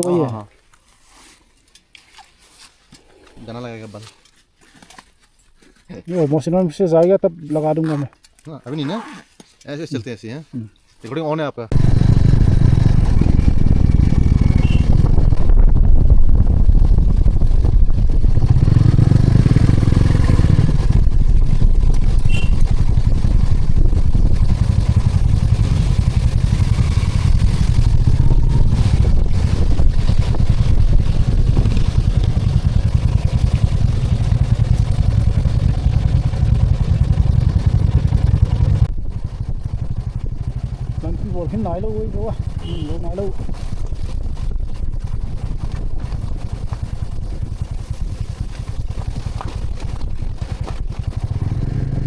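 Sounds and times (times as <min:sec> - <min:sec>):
motorcycle engine running: 0:11.7 - 0:52.0
wind rumble on microphone: 0:11.7 - 0:52.0.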